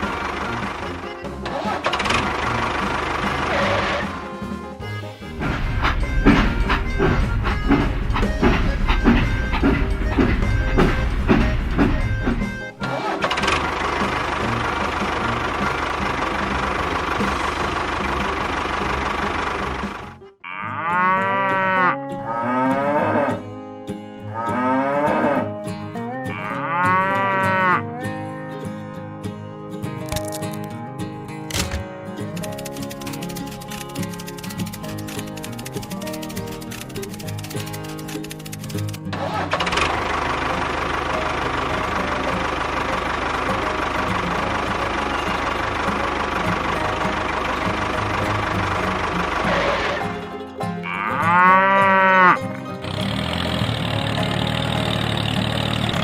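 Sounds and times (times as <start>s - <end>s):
small engine running: 0.0s - 20.2s, 32.3s - 51.1s, 52.3s - 56.0s
cow mooing: 20.4s - 23.4s, 24.2s - 28.6s, 50.8s - 53.2s.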